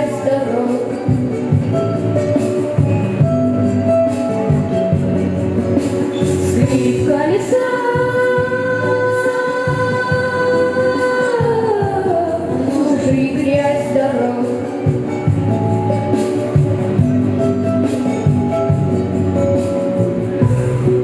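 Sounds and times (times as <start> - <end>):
backing track music: 0.0 - 21.0
child singing: 6.6 - 14.7.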